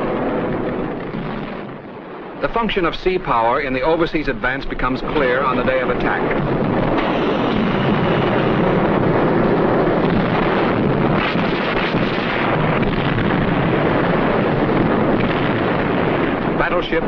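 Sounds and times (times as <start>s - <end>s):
dense rumbling noise: 0.0s - 17.0s.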